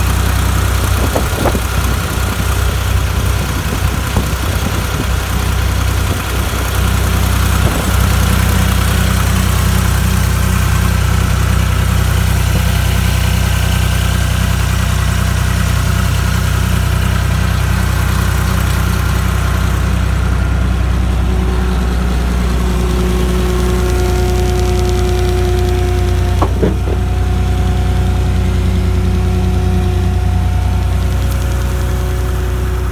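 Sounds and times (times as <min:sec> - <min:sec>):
diesel engine idling: 0:00.0 - 0:32.9
steady whine: 0:17.2 - 0:32.9.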